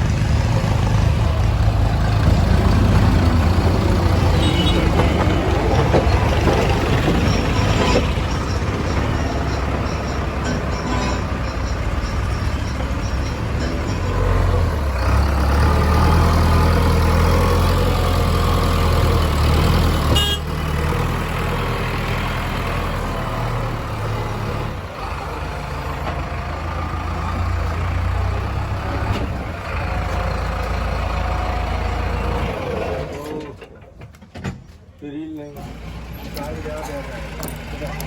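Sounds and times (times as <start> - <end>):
heavy diesel engine running: 0.0 - 33.6.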